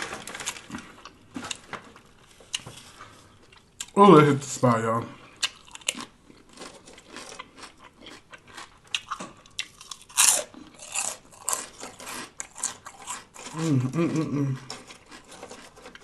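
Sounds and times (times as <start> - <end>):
chewing crunchy food: 5.3 - 16.0.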